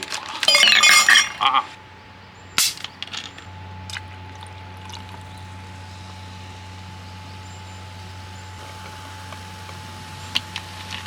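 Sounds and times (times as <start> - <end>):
glass clinks: 0.4 - 1.7
drink being poured: 4.3 - 5.3.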